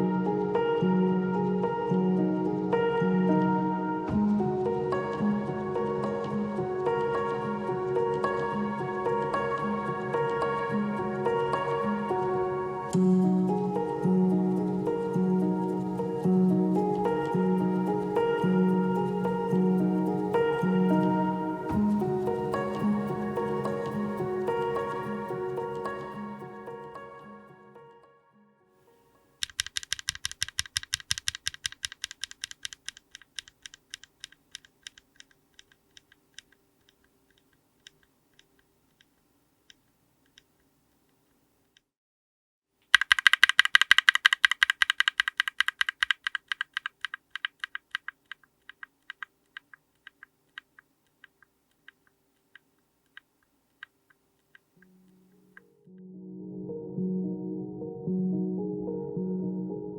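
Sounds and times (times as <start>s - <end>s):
mechanical keyboard typing: 29.4s - 38.5s, 42.9s - 54.7s.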